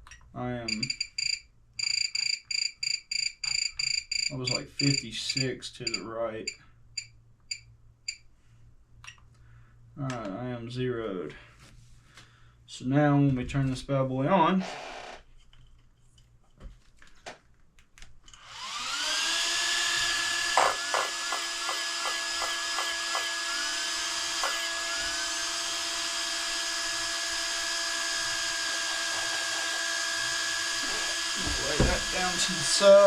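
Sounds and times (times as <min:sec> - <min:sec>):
electric whine: 0:18.5 - 0:33.0.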